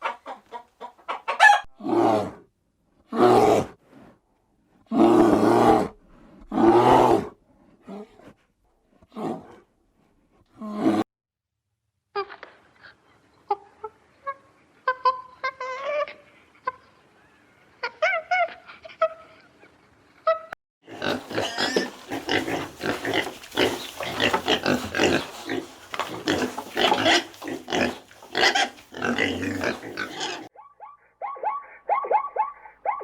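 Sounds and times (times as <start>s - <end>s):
pigs grunting and squealing: 1.4s - 2.4s, 3.1s - 3.8s, 4.9s - 8.4s, 20.8s - 30.5s.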